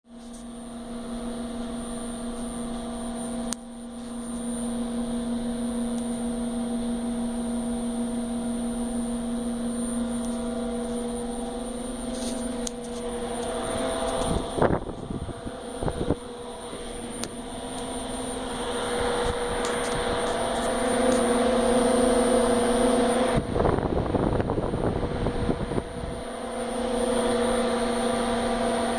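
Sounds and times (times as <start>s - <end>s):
faint high whine: 0.1s - 28.9s
power unit humming: 0.1s - 28.9s
noisy rush: 8.5s - 28.9s.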